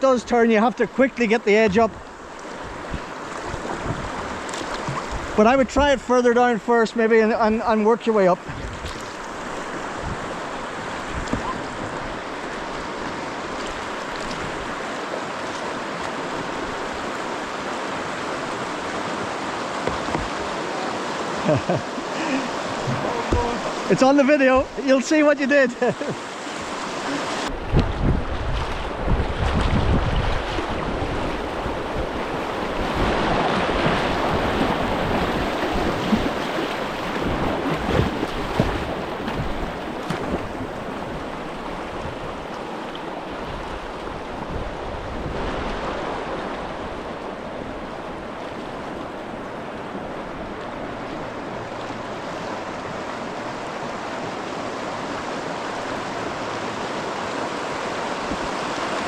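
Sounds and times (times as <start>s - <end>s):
river water rushing over rapid: 0.0s - 7.0s, 8.1s - 59.0s
wind gusting on microphone: 1.6s - 6.0s, 8.4s - 14.8s, 26.6s - 42.5s, 43.2s - 50.6s.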